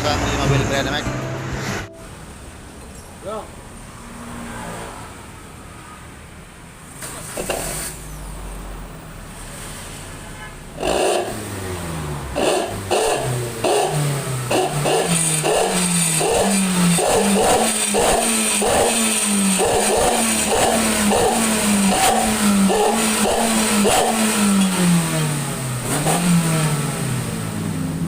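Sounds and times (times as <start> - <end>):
engine revving through exhaust: 10.8 - 28.0.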